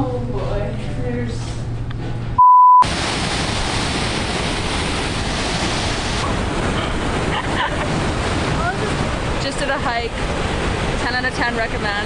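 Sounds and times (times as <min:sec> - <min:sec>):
loud electronic beep: 0:02.4 - 0:02.9
ocean surf: 0:02.8 - 0:12.0
wind rushing over microphone: 0:02.8 - 0:12.0.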